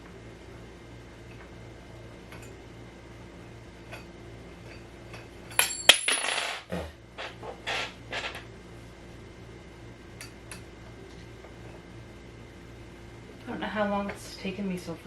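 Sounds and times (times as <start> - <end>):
small furniture parts clinking and rattling: 4.7 - 6.7.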